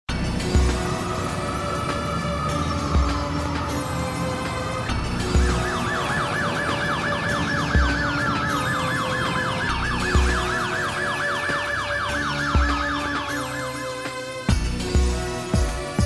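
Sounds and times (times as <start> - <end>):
falling synth glides: 0.1 - 14.5
warbling siren-like synth line: 0.2 - 14.5.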